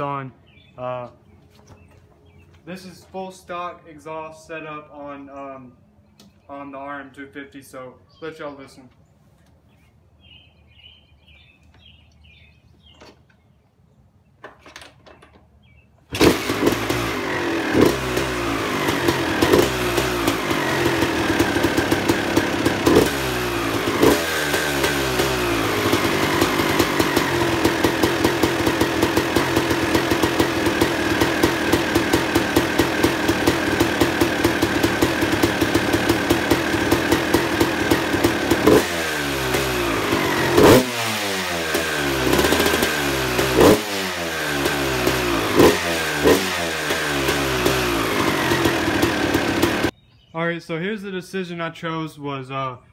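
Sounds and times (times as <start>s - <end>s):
dirt bike engine revving and idling: 16.1s - 49.9s.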